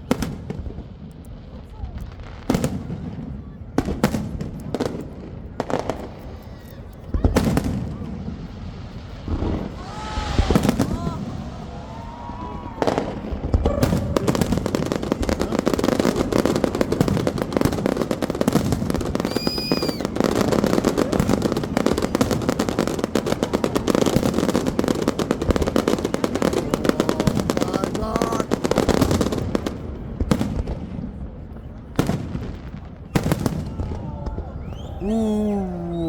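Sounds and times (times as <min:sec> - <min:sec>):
crowd voices: 0:00.0 - 0:36.0
firework bangs and crackling: 0:00.0 - 0:36.0
firework whistle: 0:09.2 - 0:14.9, 0:19.1 - 0:24.7, 0:33.0 - 0:36.0.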